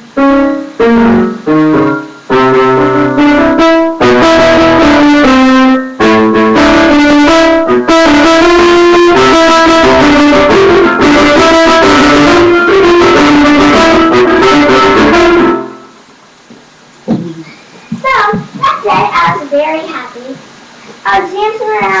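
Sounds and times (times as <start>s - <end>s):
piano music: 0.0s - 16.1s.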